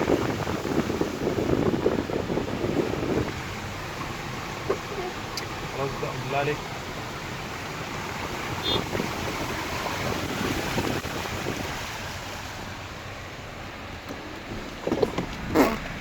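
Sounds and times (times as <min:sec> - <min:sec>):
rain and water rushing around car: 0:00.0 - 0:16.0.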